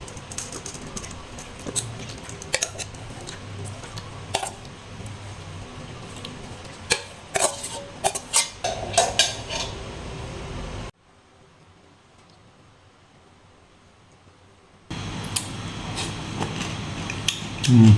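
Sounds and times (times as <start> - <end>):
utensils clinking on dishes: 0.0 - 10.1.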